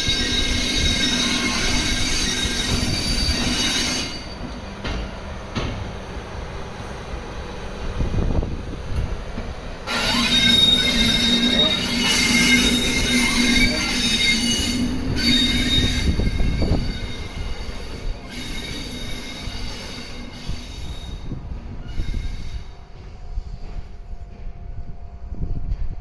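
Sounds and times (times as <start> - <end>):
locomotive wheels squealing on rails: 0.0 - 4.7, 9.8 - 24.5.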